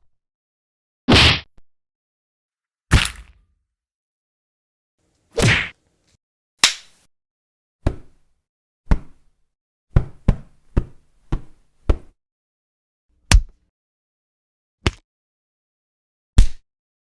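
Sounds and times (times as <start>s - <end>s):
punch impacts: 1.1s - 1.5s, 5.4s - 5.8s.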